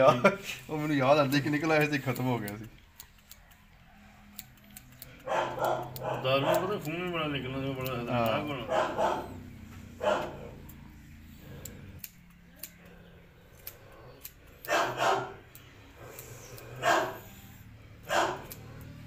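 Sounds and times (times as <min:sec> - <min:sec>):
dog barking: 0:03.4 - 0:04.5, 0:05.1 - 0:07.0, 0:07.8 - 0:11.0, 0:13.8 - 0:15.5, 0:16.1 - 0:17.4, 0:18.0 - 0:19.0.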